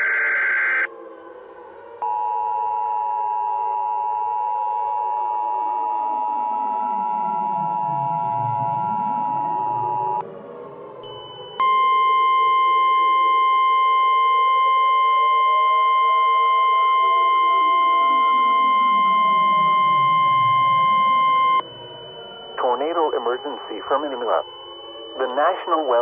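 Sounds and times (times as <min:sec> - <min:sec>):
siren wailing: 0:00.0 - 0:26.0
two-tone attention signal: 0:11.0 - 0:26.0
steady weather-radio alert tone: 0:16.6 - 0:26.0.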